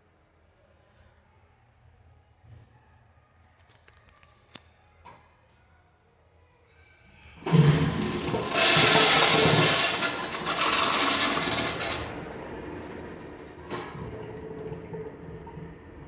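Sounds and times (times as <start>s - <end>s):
toilet flushing: 7.4s - 16.0s.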